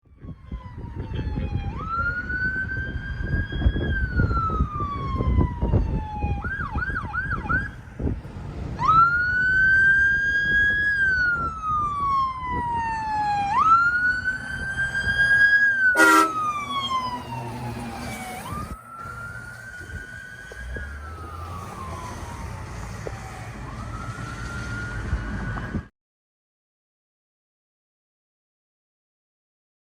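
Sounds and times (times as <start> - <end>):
fire truck siren wailing: 0.0 - 25.9
siren yelps: 0.1 - 7.8, 8.8 - 25.9
rumble of passing trucks: 0.1 - 25.9
horn blast: 15.9 - 16.6.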